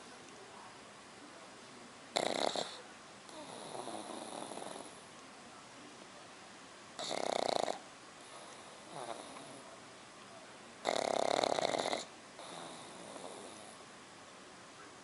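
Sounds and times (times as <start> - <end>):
person snoring: 10.9 - 13.8.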